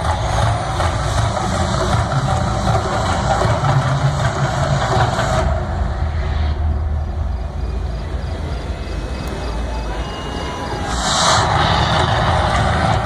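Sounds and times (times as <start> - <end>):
loud low rumble: 0.0 - 13.0
rushing hiss: 9.2 - 13.0.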